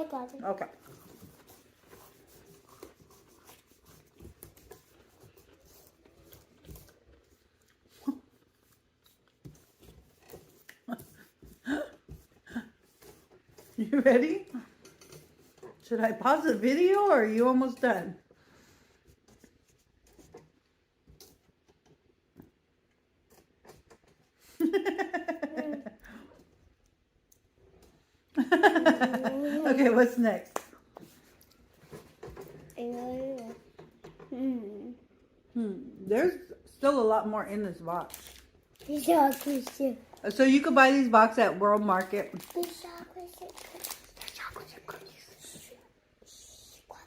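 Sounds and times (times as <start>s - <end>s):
faint clicks and rustles: 0.0s - 34.4s, 37.9s - 47.0s
person laughing: 24.6s - 25.9s, 28.5s - 29.6s
snack packaging rustling: 38.0s - 40.3s, 41.7s - 45.5s.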